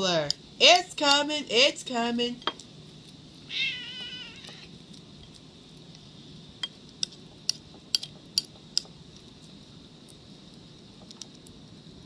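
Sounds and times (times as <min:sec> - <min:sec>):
cat meowing: 0:03.5 - 0:04.7.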